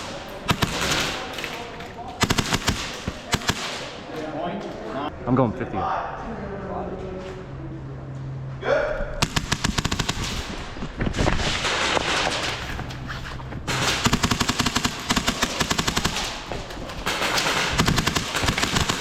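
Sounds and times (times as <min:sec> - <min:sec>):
airsoft guns firing bursts: 0:00.0 - 0:04.1, 0:09.2 - 0:10.8, 0:13.7 - 0:19.0.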